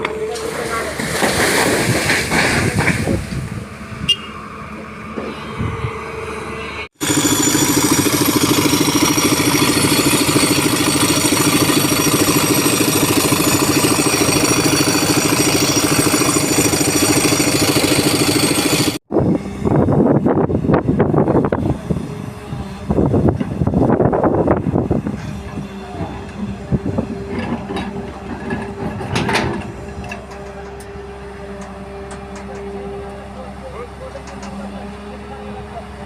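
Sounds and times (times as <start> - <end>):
excavator engine running: 2.0 - 36.0
uneven machine noise: 4.4 - 36.0.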